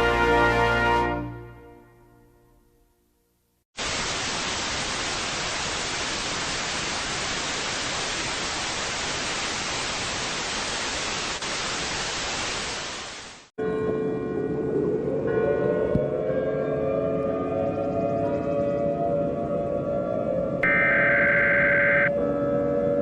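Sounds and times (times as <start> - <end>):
broadcast static hiss: 3.4 - 13.5
steady ringing tones: 20.6 - 23.0.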